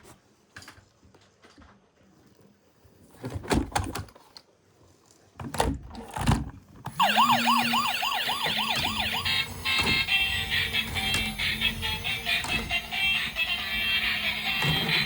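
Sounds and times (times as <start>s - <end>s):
toy electronic siren yelp: 7.0s - 15.0s.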